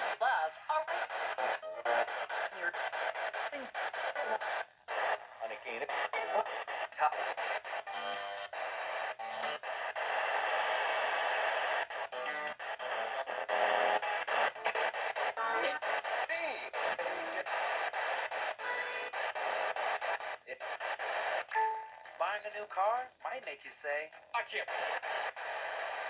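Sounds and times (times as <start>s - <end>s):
music on radio: 0.0s - 23.0s, 23.9s - 26.0s
singing voices: 15.4s - 15.9s.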